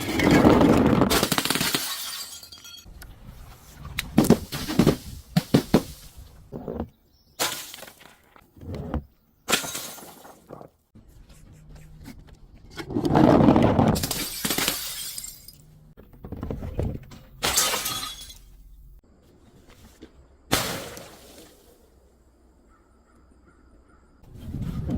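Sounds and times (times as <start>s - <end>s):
glass bottles smashing: 1.1s - 2.9s, 9.5s - 10.6s, 14.0s - 15.7s, 17.4s - 18.6s.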